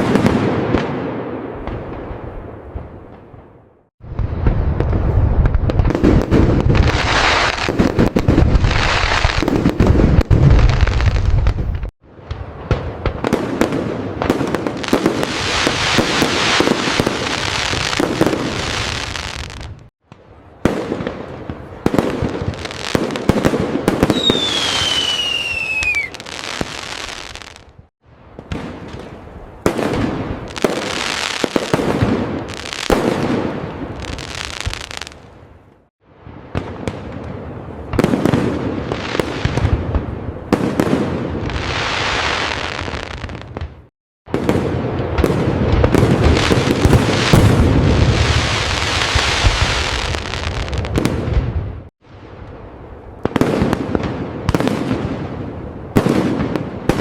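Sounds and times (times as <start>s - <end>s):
fireworks crackling and bursting: 0.0s - 57.0s
falling whistle: 24.1s - 26.2s.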